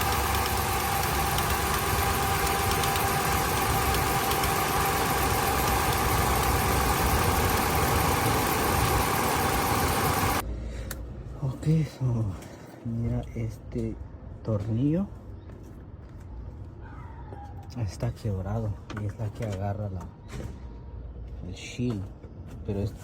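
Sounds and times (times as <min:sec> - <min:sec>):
engine idling with fast ticking: 0:00.0 - 0:10.4.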